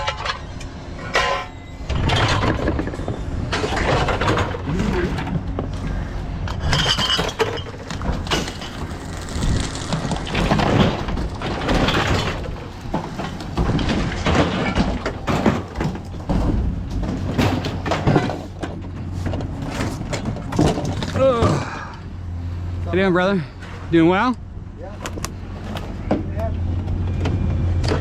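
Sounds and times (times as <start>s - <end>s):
objects knocking and clattering: 1.1s - 5.9s, 6.5s - 21.7s.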